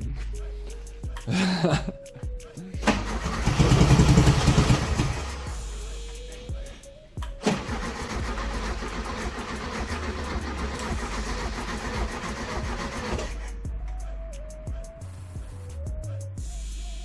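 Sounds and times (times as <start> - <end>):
car engine starting and running: 2.8 - 5.7, 7.4 - 13.6.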